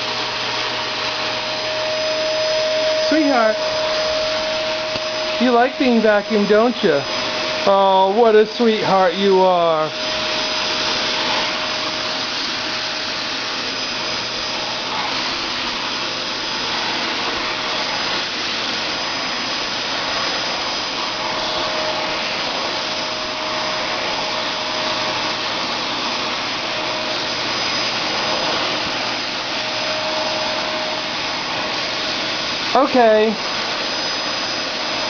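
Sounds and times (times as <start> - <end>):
vacuum cleaner running: 0.0 - 35.0.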